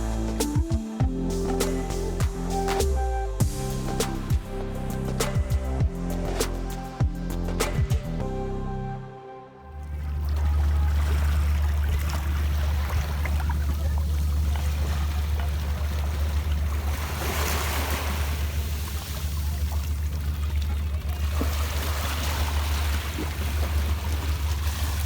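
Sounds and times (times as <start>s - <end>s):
boat motor humming: 0.0s - 16.9s
water splashing against hull: 9.8s - 25.0s.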